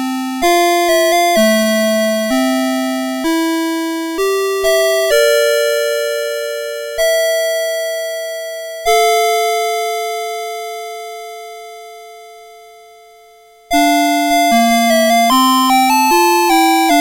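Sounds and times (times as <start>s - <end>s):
alarm clock electronic melody: 0.2s - 7.7s, 13.7s - 17.0s.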